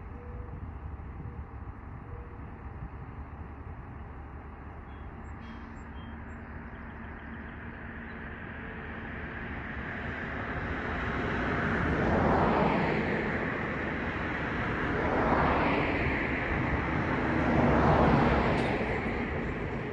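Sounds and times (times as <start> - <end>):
vehicle passing: 7.8 - 19.3.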